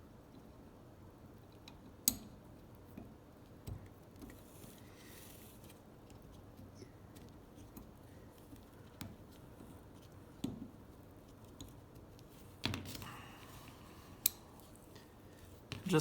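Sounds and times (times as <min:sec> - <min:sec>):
small metal clicks and taps: 0:01.4 - 0:04.4, 0:11.4 - 0:13.0.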